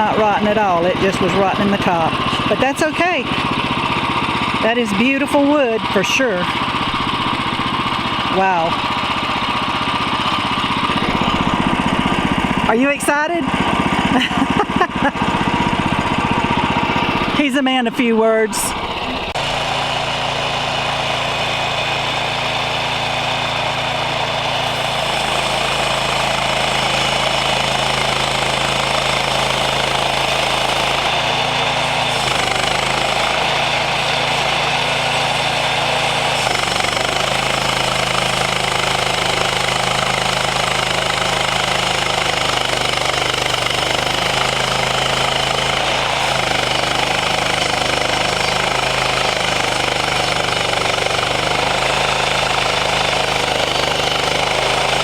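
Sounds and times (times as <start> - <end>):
band blade cutting log: 0.0 - 55.0
sawmill engine running under load: 0.0 - 55.0.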